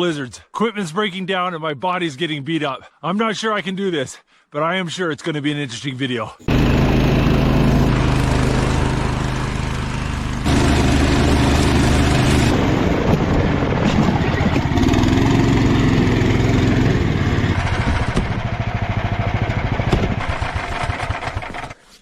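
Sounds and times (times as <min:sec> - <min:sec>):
small engine running under load: 0:06.5 - 0:21.9.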